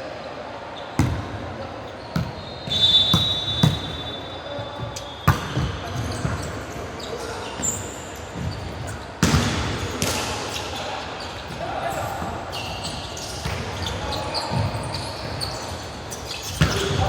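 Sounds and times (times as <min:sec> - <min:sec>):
basketball bouncing on a court: 0:01.0 - 0:01.3, 0:02.2 - 0:04.0, 0:04.8 - 0:06.5, 0:08.4 - 0:10.2, 0:16.5 - 0:17.0.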